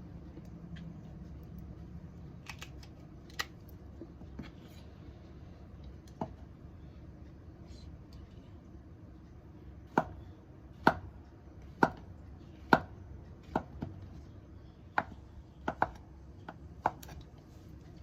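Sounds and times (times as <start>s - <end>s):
knife chopping on cutting board: 10.8s - 14.0s, 15.0s - 17.2s.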